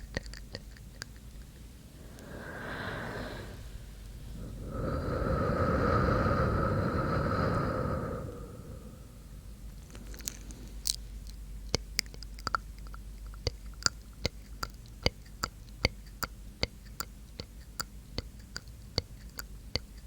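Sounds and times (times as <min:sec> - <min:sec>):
wet mouth clicks: 0:00.0 - 0:04.8, 0:10.0 - 0:20.0
breath blown into microphone: 0:01.9 - 0:09.6.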